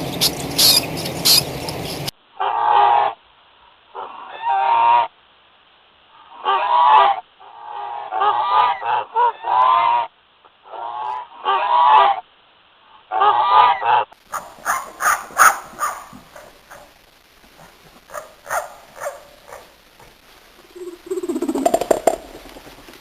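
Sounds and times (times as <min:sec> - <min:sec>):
geese honking: 0:00.0 - 0:02.1, 0:13.2 - 0:17.0, 0:17.6 - 0:23.0.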